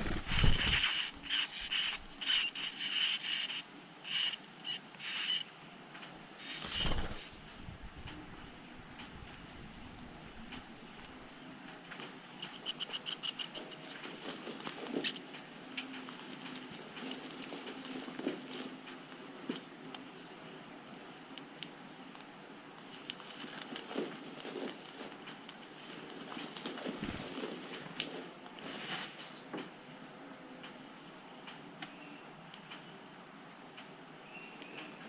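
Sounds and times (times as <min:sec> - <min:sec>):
nestlings peeping: 0:00.0 - 0:22.3, 0:22.9 - 0:27.5, 0:28.8 - 0:29.4.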